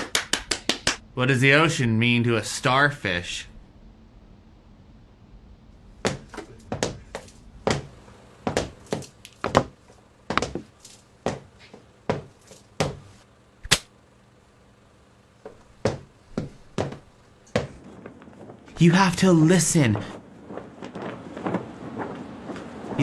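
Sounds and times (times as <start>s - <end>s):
sharp knocks and thunks: 6.0s - 10.7s, 12.1s - 13.1s, 15.8s - 18.7s.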